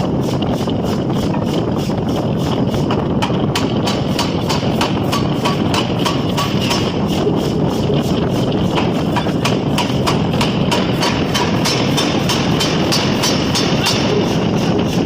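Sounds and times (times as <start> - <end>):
loud machine din: 0.0 - 15.0
power hammer striking steel: 2.9 - 7.1, 8.7 - 15.0.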